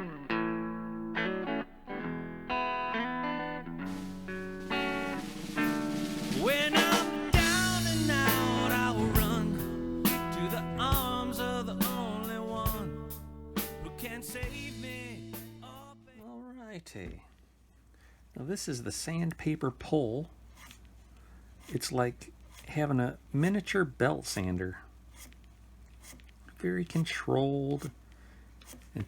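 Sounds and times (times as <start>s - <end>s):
plucked guitar notes: 0.0s - 16.0s
drum kit: 3.9s - 15.9s.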